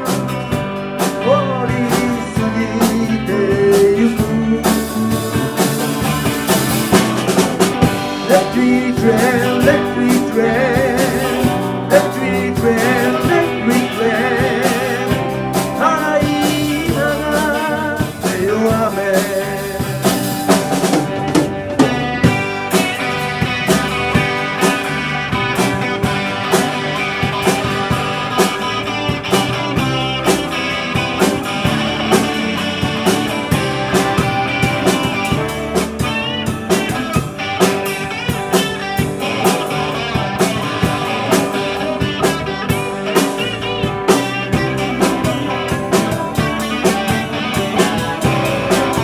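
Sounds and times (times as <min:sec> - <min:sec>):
drum kit steady beat: 0:00.0 - 0:49.0
electric guitar: 0:00.0 - 0:49.0.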